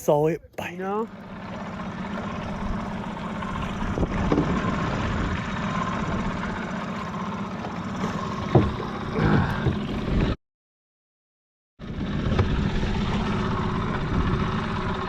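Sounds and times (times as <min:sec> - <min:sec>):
outboard motor running: 0:00.0 - 0:10.4, 0:11.8 - 0:15.0
brief loud knocks: 0:08.5 - 0:08.8.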